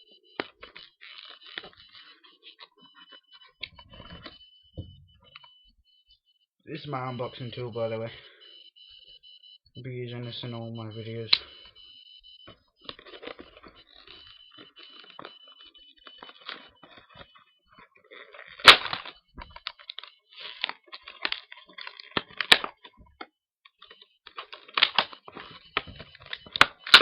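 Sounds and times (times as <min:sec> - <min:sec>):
packaging rustling and tearing: 0:18.0 - 0:22.9.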